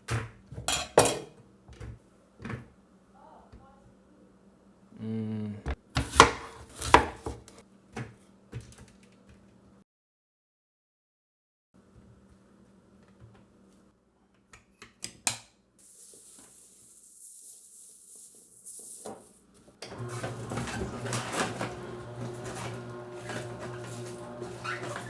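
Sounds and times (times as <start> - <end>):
juicer crunching produce: 6.0 - 7.6, 19.9 - 25.0
juicer motor humming: 19.8 - 25.0.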